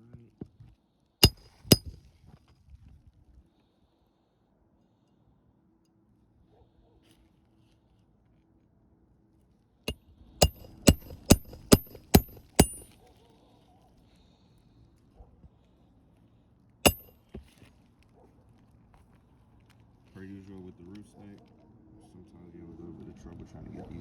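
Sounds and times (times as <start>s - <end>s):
hammer striking nail: 1.2s - 2.0s, 10.4s - 12.9s, 16.9s - 17.2s.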